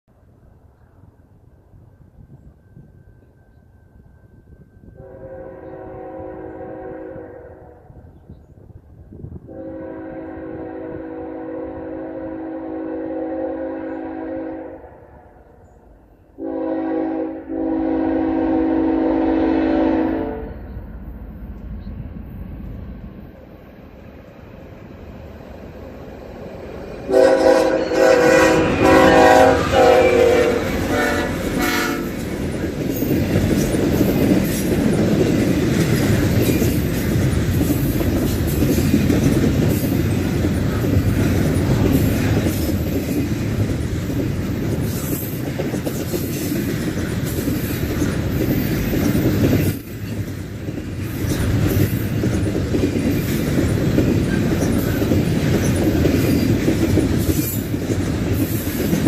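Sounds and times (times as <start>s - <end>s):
freight train rumble: 0.1s - 59.0s
locomotive air horn: 5.0s - 8.0s, 9.5s - 15.4s, 16.4s - 20.7s, 27.1s - 32.2s.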